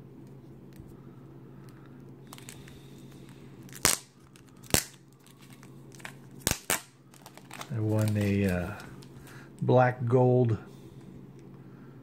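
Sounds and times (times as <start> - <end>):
packaging crinkling: 2.2 - 9.4
card packaging snaps and clicks: 2.3 - 2.8, 3.7 - 9.1.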